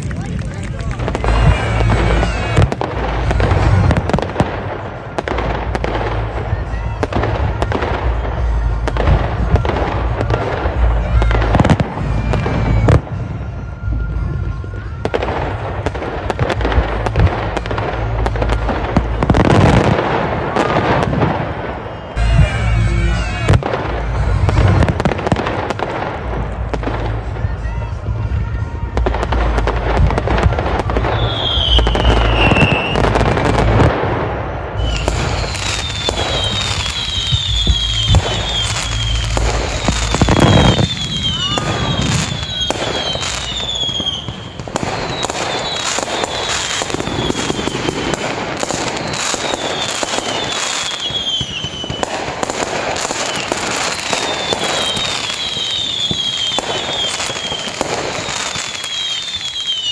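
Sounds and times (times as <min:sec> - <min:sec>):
fireworks bangs and crackles: 0:00.0 - 0:59.9
falling whistling tones: 0:20.6 - 0:25.9, 0:30.8 - 0:59.9.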